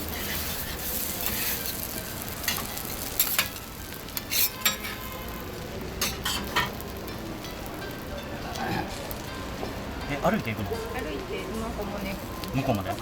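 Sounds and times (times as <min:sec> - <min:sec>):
metal spatulas scraping griddle: 0:00.0 - 0:01.9, 0:04.2 - 0:05.1
food sizzling on a griddle: 0:00.0 - 0:13.0.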